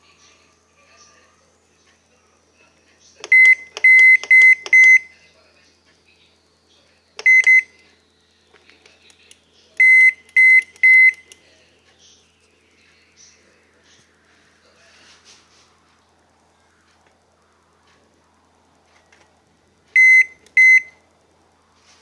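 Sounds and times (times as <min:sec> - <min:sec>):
microwave keypad beeps: 0:03.2 - 0:05.1, 0:07.2 - 0:07.8, 0:09.8 - 0:11.3, 0:20.0 - 0:21.0.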